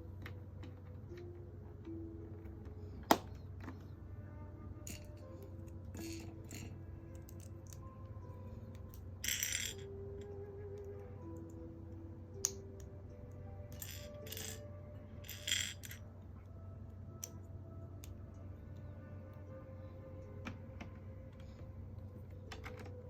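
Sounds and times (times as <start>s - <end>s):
quiet background music: 0.0s - 23.0s
plastic bricks rattling and clinking: 5.9s - 7.8s, 9.2s - 10.0s, 13.7s - 14.6s, 15.2s - 16.0s.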